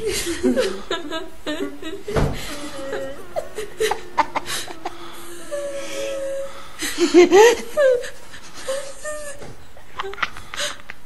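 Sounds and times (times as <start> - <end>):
laughter: 0.0 - 6.0, 6.8 - 11.0
long low tone: 0.8 - 7.8
thump: 2.1 - 2.4.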